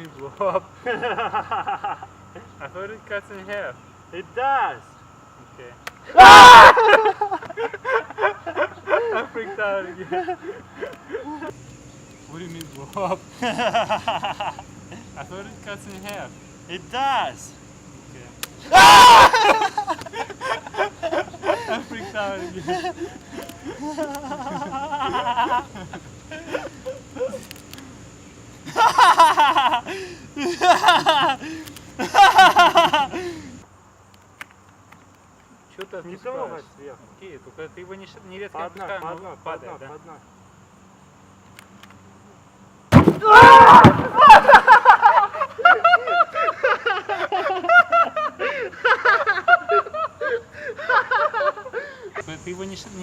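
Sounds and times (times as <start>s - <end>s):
person laughing heartily: 0.4s - 2.1s, 6.2s - 11.5s, 13.3s - 15.1s, 18.7s - 27.5s, 28.6s - 33.6s, 44.1s - 52.3s
people giggling: 0.4s - 2.6s, 6.7s - 11.5s, 13.0s - 15.1s, 19.2s - 27.5s, 28.6s - 33.6s, 44.1s - 52.4s.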